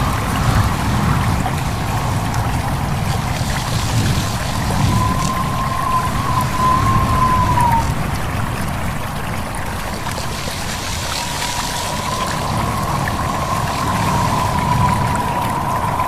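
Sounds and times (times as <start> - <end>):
thin wavering whistle-like tone: 0.0 - 8.3, 10.1 - 16.0
gusty wind rumble: 0.0 - 16.0
stream babbling: 0.0 - 16.0.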